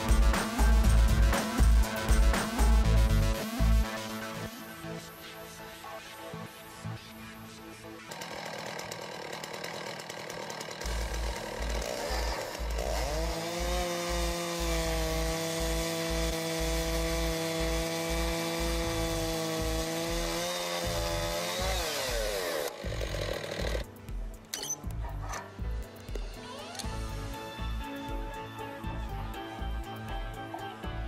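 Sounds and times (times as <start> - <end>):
music with thumping bass: 0.0 - 4.0, 10.9 - 21.9, 22.8 - 31.0
chainsaw revving: 8.0 - 24.0.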